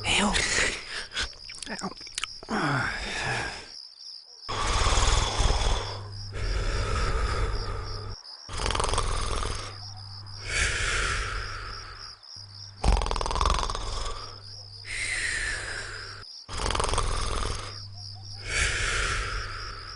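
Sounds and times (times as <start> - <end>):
cartoon snoring: 4.5 - 12.1, 12.8 - 19.9
steady low hum: 4.5 - 19.9.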